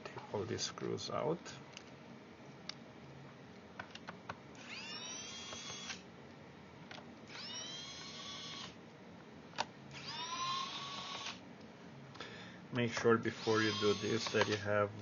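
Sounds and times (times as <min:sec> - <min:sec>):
electric screwdriver whirring: 0:04.6 - 0:06.0, 0:07.3 - 0:08.8, 0:09.9 - 0:11.4, 0:13.3 - 0:14.7
screwdriver bit clicks: 0:14.1 - 0:14.6.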